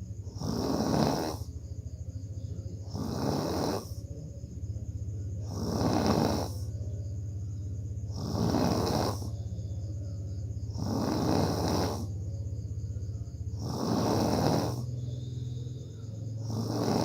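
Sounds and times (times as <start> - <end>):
person snoring heavily: 0.3 - 1.7, 2.8 - 4.1, 5.3 - 6.8, 8.0 - 9.5, 10.6 - 12.3, 13.5 - 15.2, 16.3 - 17.0.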